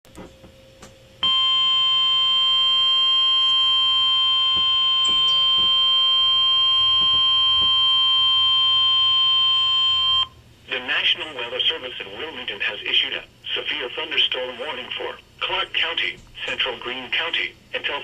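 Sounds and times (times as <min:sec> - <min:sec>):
steady high alarm tone: 0:01.2 - 0:10.4.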